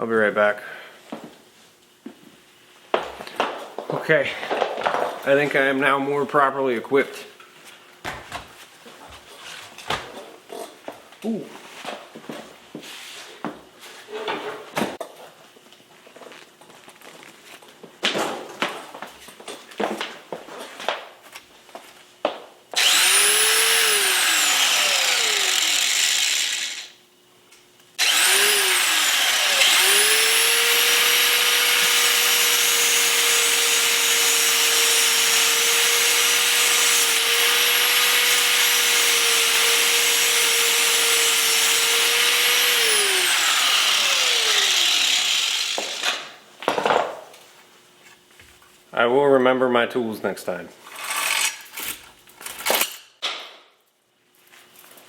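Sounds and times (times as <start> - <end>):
power tool whine: 22.8 - 27.0, 28.0 - 46.3.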